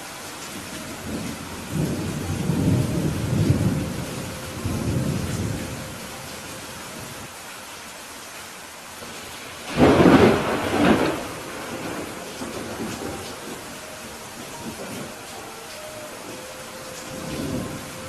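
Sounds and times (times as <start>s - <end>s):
steady rain: 0.0s - 18.0s
thunder rolling: 1.0s - 6.0s, 9.0s - 15.4s, 16.0s - 18.0s.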